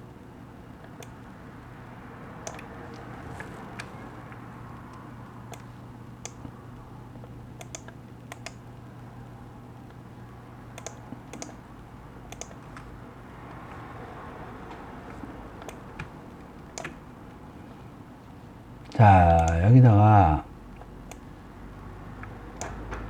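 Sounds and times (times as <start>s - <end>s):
faint low hum: 0.0s - 22.8s
computer clicks: 2.4s - 2.7s, 3.3s - 6.6s, 7.2s - 8.7s, 10.7s - 11.6s, 12.3s - 12.9s, 15.6s - 17.0s, 19.3s - 19.6s, 22.2s - 22.9s.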